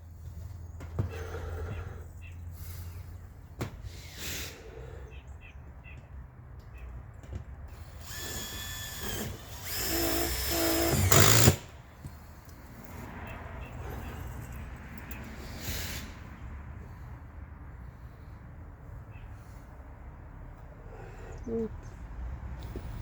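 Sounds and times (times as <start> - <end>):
power drill driving screws into metal: 7.7 - 11.8.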